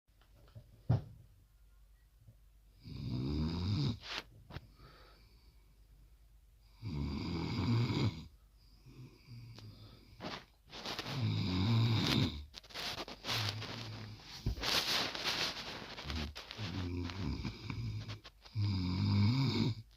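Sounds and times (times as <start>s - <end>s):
loud snoring: 2.8s - 4.0s, 6.7s - 8.3s, 11.1s - 12.5s, 16.1s - 19.8s
faint breathing: 4.0s - 6.8s, 8.2s - 11.3s.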